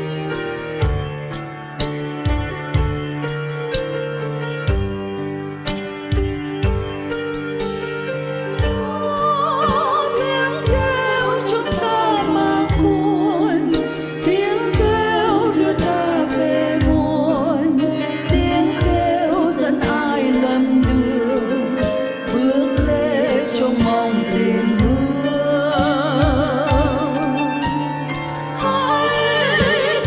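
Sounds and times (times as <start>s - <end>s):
slow hymn with vibrato melody: 7.2s - 30.0s.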